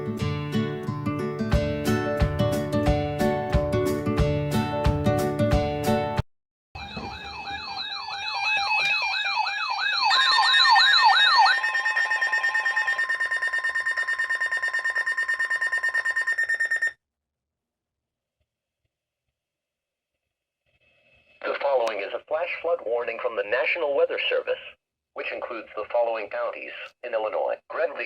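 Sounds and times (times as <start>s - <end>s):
strummed acoustic guitar: 0.0s - 6.2s
electronic alarm: 6.8s - 17.0s.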